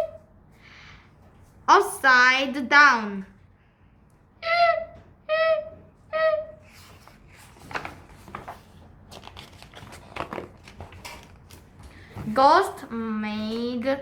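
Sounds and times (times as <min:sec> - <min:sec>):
paper rustling and crinkling: 0:06.7 - 0:13.7.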